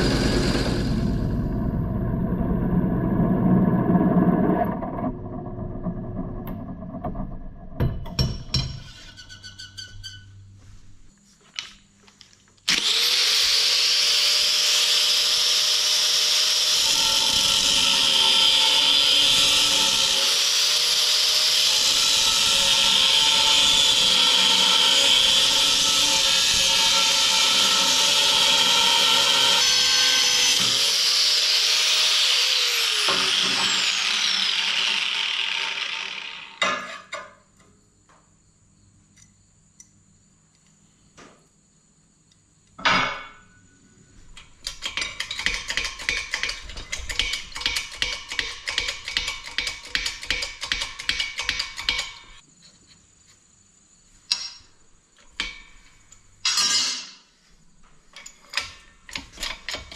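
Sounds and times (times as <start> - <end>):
power tool on steel plate: 0.0 - 1.6, 12.7 - 37.1
metal knocks and clatter: 6.9 - 9.4.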